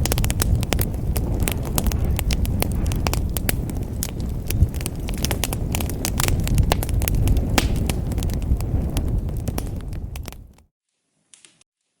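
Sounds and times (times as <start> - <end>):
log fire crackling and popping: 0.0 - 10.6.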